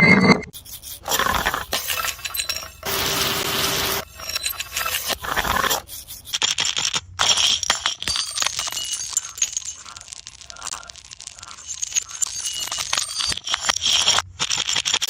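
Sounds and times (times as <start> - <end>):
glass scraping: 0.0 - 5.8
glass clinking and rattling: 7.2 - 10.1, 11.6 - 14.2.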